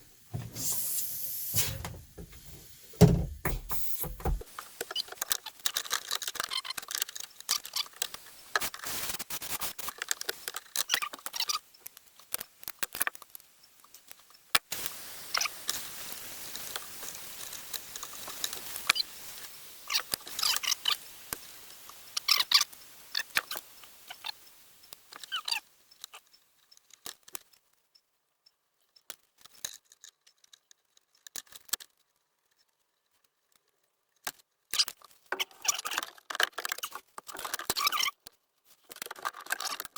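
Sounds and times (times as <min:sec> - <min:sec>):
steady hiss: 0:00.0 - 0:04.7, 0:14.7 - 0:26.1
light clicks taps and scrapes: 0:00.3 - 0:08.8, 0:29.0 - 0:32.8.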